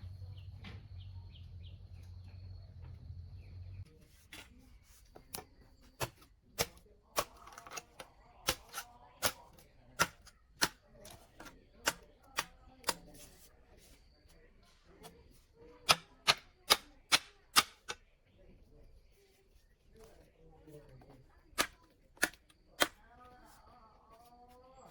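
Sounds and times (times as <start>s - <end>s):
sharp chopping strikes: 8.5s - 13.1s, 15.9s - 18.0s, 21.6s - 23.0s.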